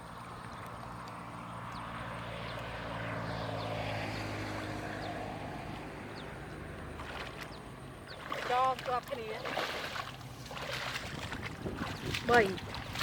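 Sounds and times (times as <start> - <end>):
motor engine droning past: 0.0 - 8.5.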